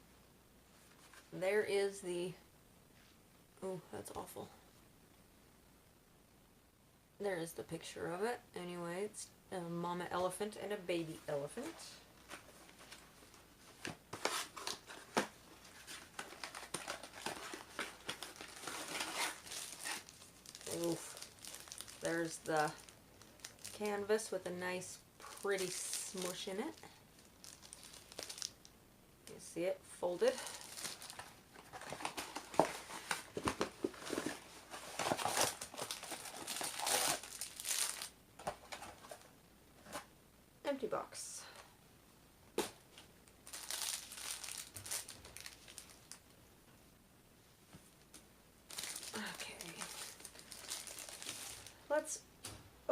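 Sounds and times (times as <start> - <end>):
packaging crinkling and rustling: 11.5 - 24.1, 25.2 - 28.7, 30.3 - 39.3, 42.9 - 46.3, 48.7 - 51.8.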